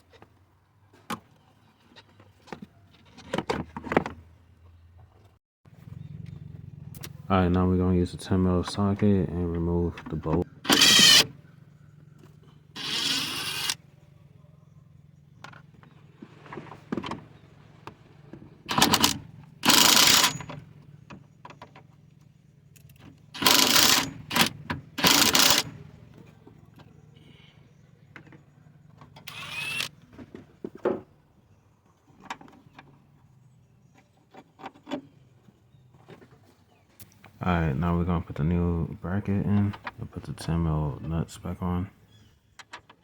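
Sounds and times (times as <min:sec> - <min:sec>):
socket ratchet clicking: 0:10.7 - 0:11.3, 0:18.7 - 0:20.5, 0:23.4 - 0:25.7.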